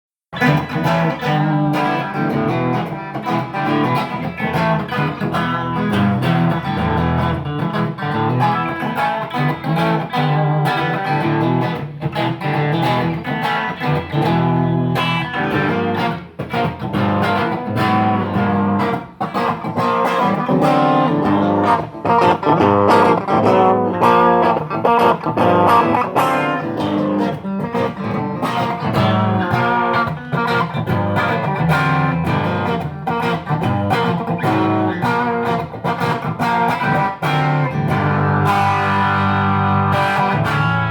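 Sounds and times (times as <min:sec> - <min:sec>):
electric guitar through tube amplifier: 0:00.4 - 0:40.9.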